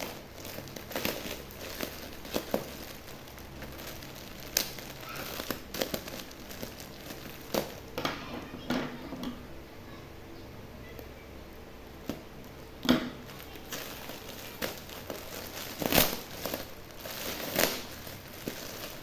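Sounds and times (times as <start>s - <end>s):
plastic packaging crinkling: 0.0s - 8.6s, 10.9s - 19.0s.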